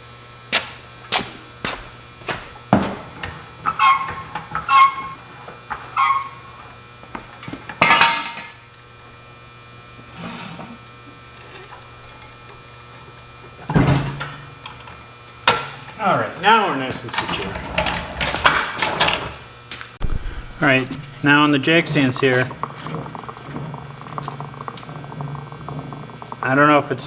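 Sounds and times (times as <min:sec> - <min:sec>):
electrical hum: 0:00.0 - 0:27.0
metal clanks: 0:00.6 - 0:08.7, 0:10.1 - 0:19.4, 0:20.0 - 0:27.0
metal clatter: 0:01.6 - 0:08.7, 0:20.0 - 0:27.0
thuds: 0:20.0 - 0:22.1.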